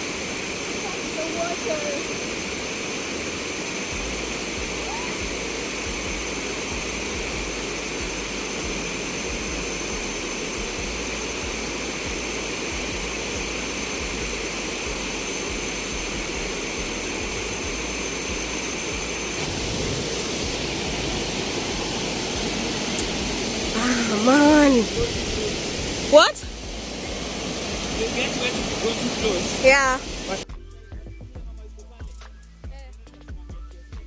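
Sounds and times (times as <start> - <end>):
waterfall roaring: 19.4 - 30.4.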